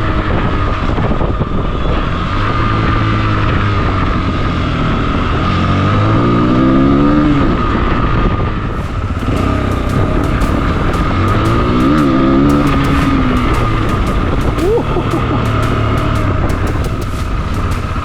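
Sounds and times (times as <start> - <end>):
wind and road noise: 0.0 - 18.0
motorcycle engine revving: 8.7 - 18.0
sharp clicks: 8.8 - 18.0.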